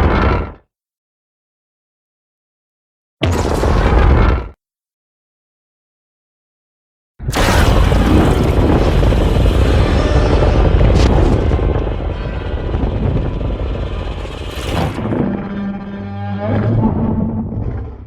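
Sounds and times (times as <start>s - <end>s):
sharp crack: 7.2s - 15.1s
heavy low rumble: 7.3s - 18.0s
low pitched drone: 7.4s - 18.0s.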